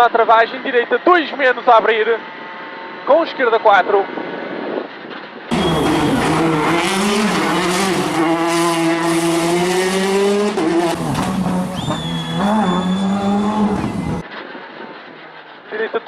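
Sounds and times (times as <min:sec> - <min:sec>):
tyres squealing: 0:05.5 - 0:09.3, 0:10.5 - 0:14.2
rally car engine at high revs: 0:05.5 - 0:14.2.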